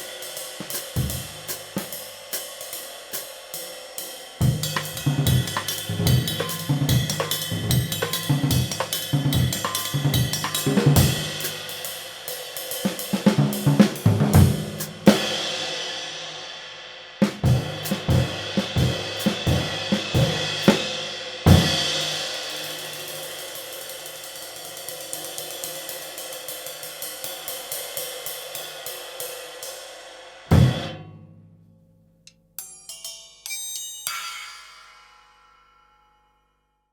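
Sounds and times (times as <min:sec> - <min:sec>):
snare drum: 0:00.0 - 0:02.0, 0:04.4 - 0:11.7, 0:12.8 - 0:15.3, 0:17.2 - 0:22.2
ride cymbal: 0:00.0 - 0:30.9.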